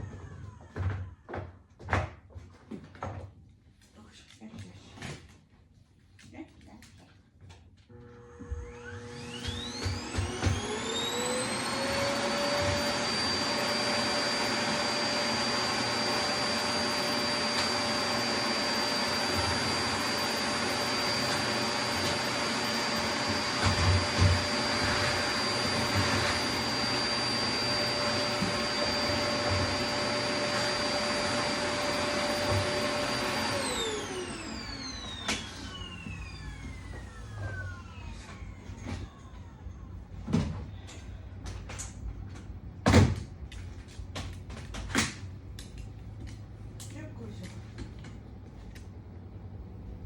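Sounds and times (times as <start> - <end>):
vacuum cleaner running: 0.0 - 1.5, 7.9 - 40.7.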